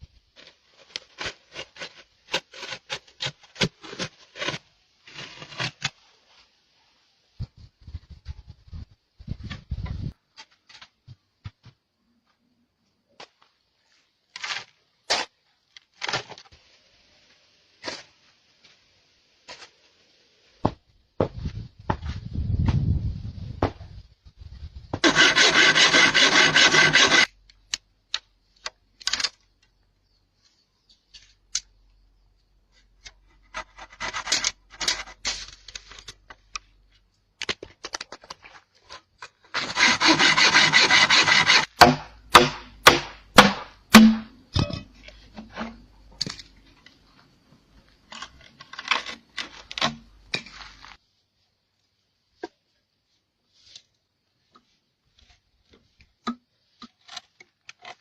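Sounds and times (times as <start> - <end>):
rasping scraping on wood: 25.0 - 27.3, 39.6 - 42.0.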